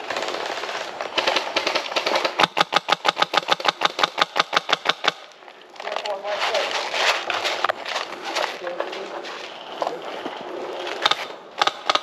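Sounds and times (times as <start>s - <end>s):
rustling noise: 0.0s - 2.4s, 5.4s - 11.4s
airsoft gun rapid firing: 1.1s - 5.2s, 11.0s - 12.0s.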